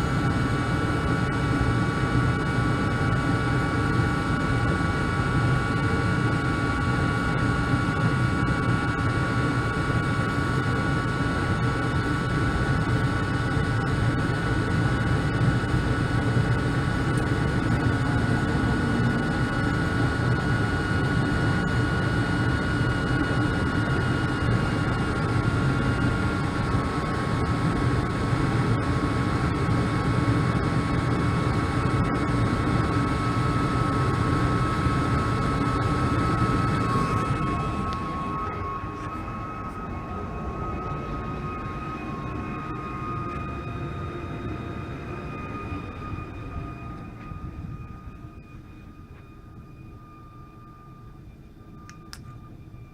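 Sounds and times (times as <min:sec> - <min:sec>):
high-pitched whine: 0:00.0 - 0:52.9
furnace airy rumble: 0:34.0 - 0:49.7.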